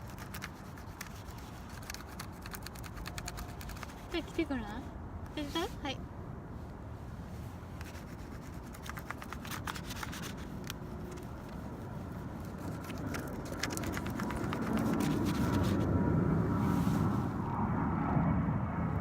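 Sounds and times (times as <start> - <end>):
crayon scratching on paper: 0.0 - 4.8, 7.8 - 15.9
low rumble: 13.4 - 19.0.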